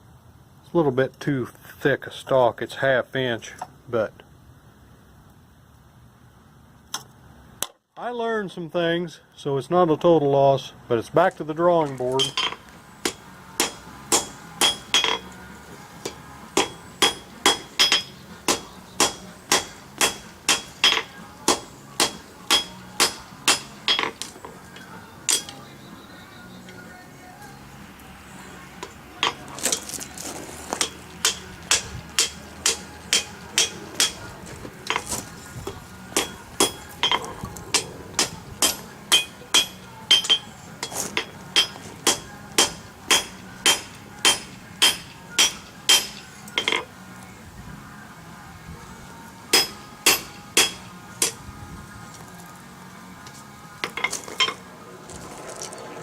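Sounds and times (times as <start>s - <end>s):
hammer ringing on anvil: 12.2s - 15.3s, 16.0s - 24.2s, 25.3s - 25.6s, 30.8s - 34.3s, 36.2s - 37.2s, 38.2s - 40.5s, 41.2s - 46.8s, 49.6s - 51.4s.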